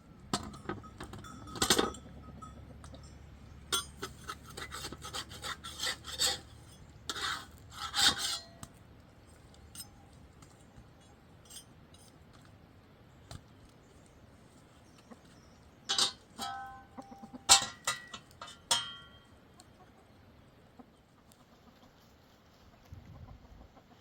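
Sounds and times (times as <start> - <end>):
chickens clucking and squawking: 2.0 - 3.6, 14.7 - 16.1, 16.7 - 17.7, 19.4 - 24.0.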